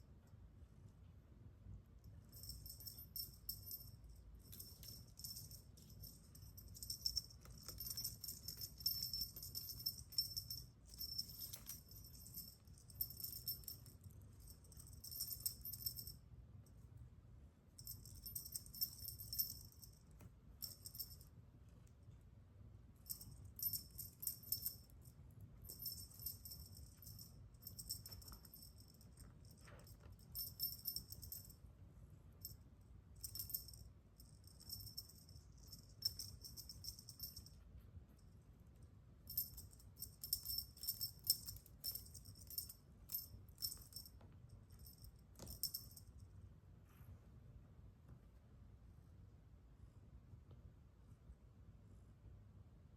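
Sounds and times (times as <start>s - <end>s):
small bells jingling: 2.3s - 16.2s, 17.8s - 20.0s, 23.0s - 24.9s, 25.7s - 31.6s, 33.2s - 37.6s, 39.3s - 46.1s.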